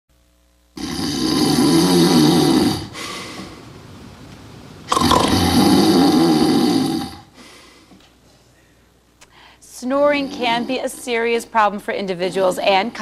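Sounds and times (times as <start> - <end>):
man snoring loudly: 0.8 - 3.1, 4.9 - 7.4
quiet breath: 2.9 - 3.7, 7.3 - 11.2.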